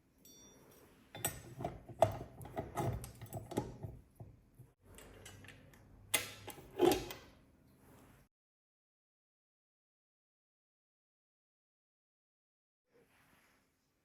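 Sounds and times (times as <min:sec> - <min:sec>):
kitchen equipment knocking: 0:01.2 - 0:04.4.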